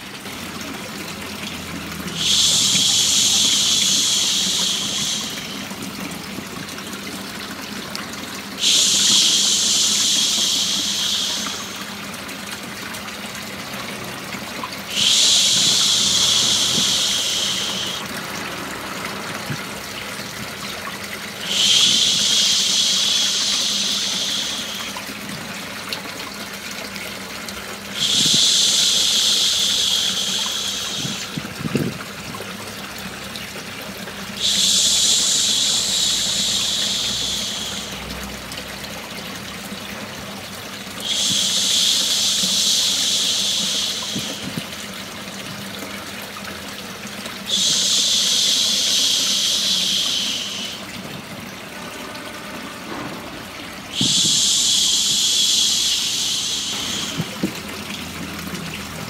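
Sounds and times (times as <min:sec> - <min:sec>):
running water white noise: 0:00.0 - 0:59.0
person shushing: 0:02.1 - 0:05.6, 0:08.6 - 0:11.9, 0:14.9 - 0:18.1, 0:21.4 - 0:24.9, 0:28.0 - 0:31.4, 0:53.9 - 0:57.5.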